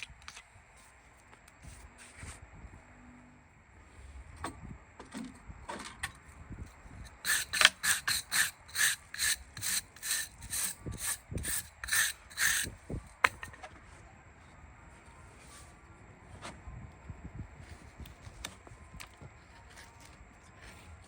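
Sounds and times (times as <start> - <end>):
rasp filing hoof: 7.1 - 13.4.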